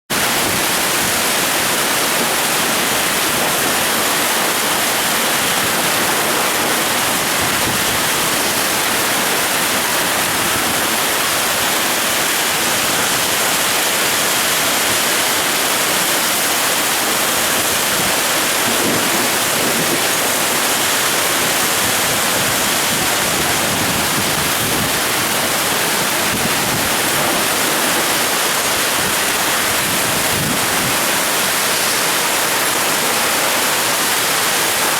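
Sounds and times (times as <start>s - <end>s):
heavy rain pouring: 0.1s - 34.9s.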